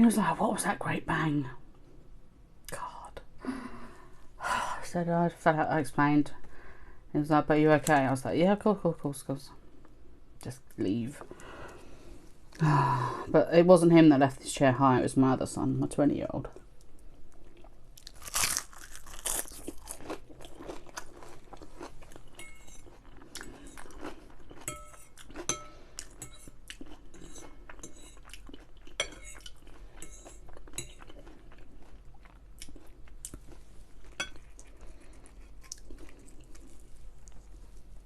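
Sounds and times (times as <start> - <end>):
chewing crispy onion rings: 16.9 - 38.0.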